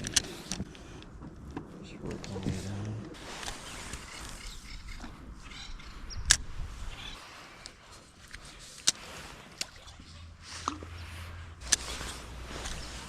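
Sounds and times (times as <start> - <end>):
faint rustling: 10.4 - 13.0.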